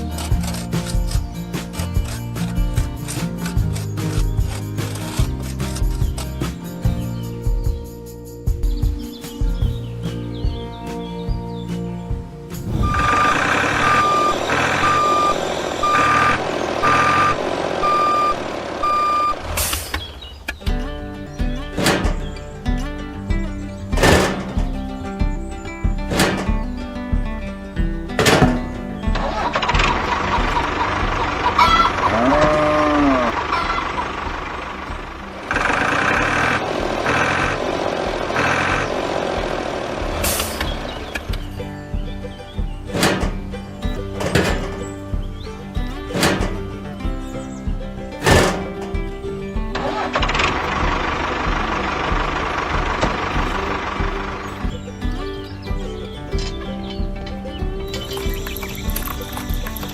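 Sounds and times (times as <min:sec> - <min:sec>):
truck engine rumbling: 0:00.0 - 0:59.9
steady background noise: 0:11.0 - 0:59.9
bright tones: 0:12.6 - 0:20.2
vehicle reversing alarm beeping: 0:12.8 - 0:20.0.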